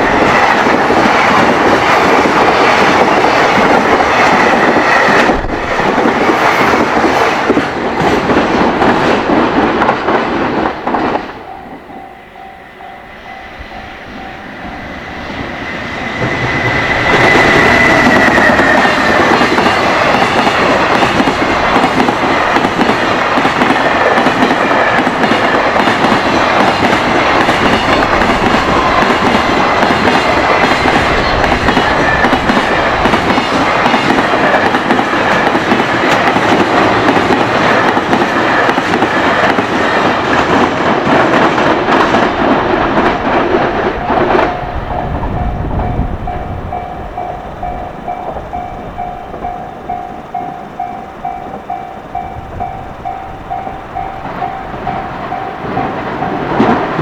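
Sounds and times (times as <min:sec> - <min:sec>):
freight train passing: 0:00.0 - 0:57.0
train wheels clattering: 0:00.0 - 0:57.0
level crossing bell ringing: 0:11.4 - 0:15.1, 0:43.8 - 0:57.0.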